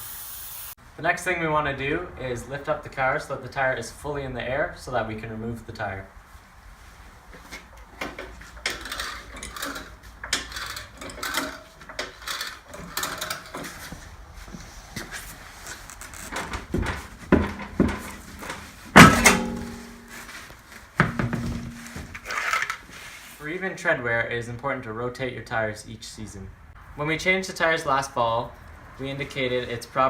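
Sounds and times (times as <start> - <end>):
heavy knocks: 16.6 - 20.1, 21.0 - 22.2
metallic clang: 17.3 - 20.4, 21.0 - 22.6.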